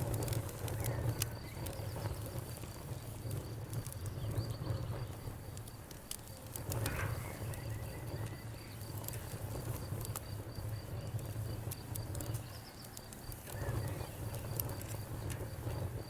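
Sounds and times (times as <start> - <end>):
campfire crackling and popping: 0.0 - 16.0
cricket chirping: 6.3 - 16.0.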